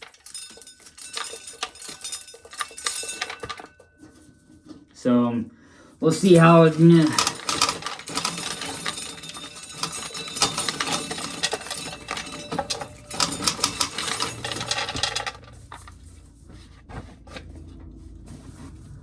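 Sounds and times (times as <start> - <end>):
corn kernels clicking and rattling: 0.0 - 3.7, 6.1 - 16.1.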